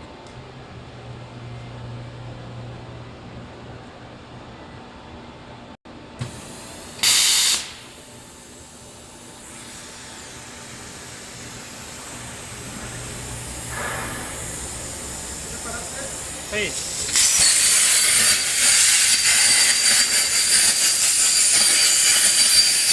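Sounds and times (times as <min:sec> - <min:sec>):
steady electrical hum: 0:00.2 - 0:19.2
plasma torch gas hiss: 0:06.2 - 0:22.9.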